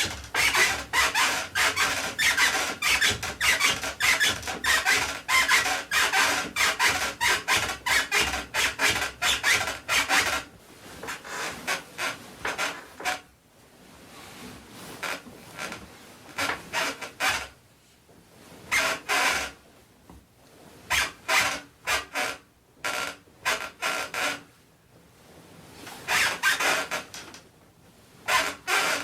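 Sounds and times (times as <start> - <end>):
bed springs creaking: 0.0 - 13.3, 14.8 - 17.6, 18.7 - 19.6, 20.8 - 24.5, 25.8 - 27.5, 28.2 - 29.0.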